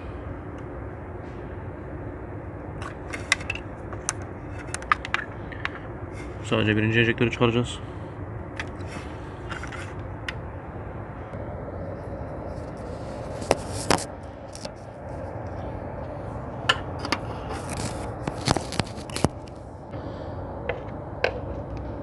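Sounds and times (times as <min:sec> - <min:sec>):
steady low hum: 0:00.0 - 0:22.0
plastic connector clicks and scrapes: 0:17.0 - 0:19.6.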